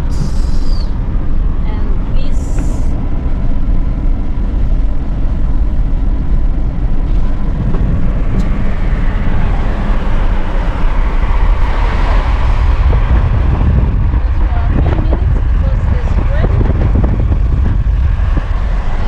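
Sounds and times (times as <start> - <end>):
car road and engine noise: 0.0 - 19.0.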